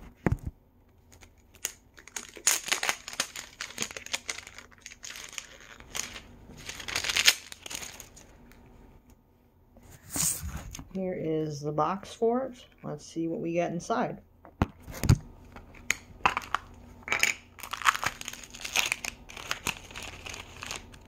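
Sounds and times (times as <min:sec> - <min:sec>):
toy packaging rustling and tearing: 0:01.0 - 0:08.3, 0:16.3 - 0:21.0.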